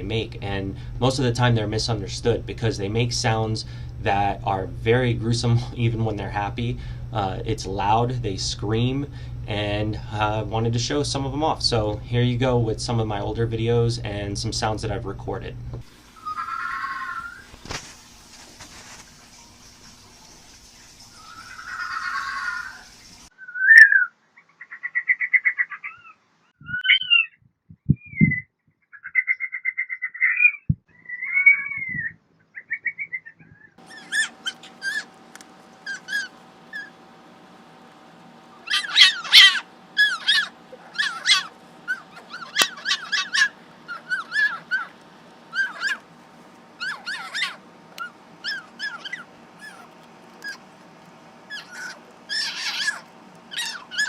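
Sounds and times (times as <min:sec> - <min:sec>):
steady hum: 0:00.0 - 0:23.4, 0:33.8 - 0:54.0
fox chirping and trilling: 0:16.2 - 0:17.5, 0:21.2 - 0:22.8, 0:23.5 - 0:27.4, 0:28.0 - 0:35.1, 0:35.8 - 0:37.0, 0:38.6 - 0:46.0, 0:46.8 - 0:50.6, 0:51.5 - 0:54.0.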